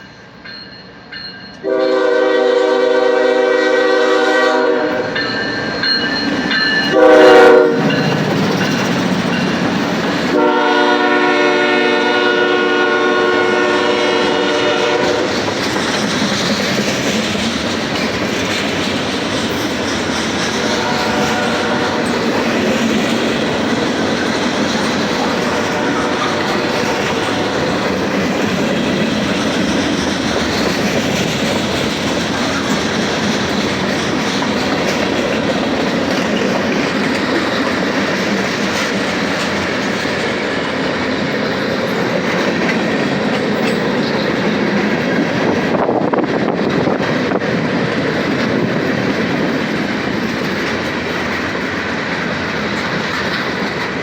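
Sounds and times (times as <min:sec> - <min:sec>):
freight train wheels rumbling: 0:00.0 - 0:54.0
clickety-clack of rail joints: 0:03.0 - 0:54.0.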